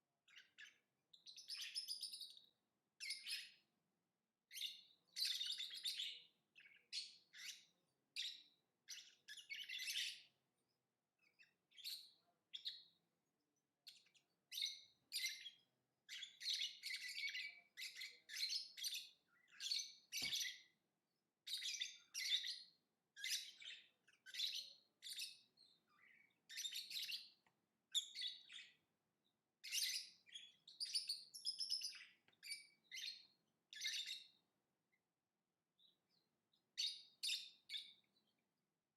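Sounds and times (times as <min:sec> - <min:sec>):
lovebird chirping: 0:00.3 - 0:03.6, 0:04.5 - 0:10.3, 0:11.2 - 0:13.0, 0:13.9 - 0:20.7, 0:21.5 - 0:28.8, 0:29.6 - 0:34.4.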